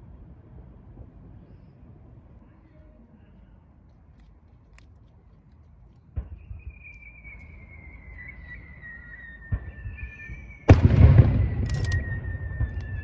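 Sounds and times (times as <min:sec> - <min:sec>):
falling firework whistle: 0:06.2 - 0:13.0
firework shell burst: 0:10.7 - 0:13.0.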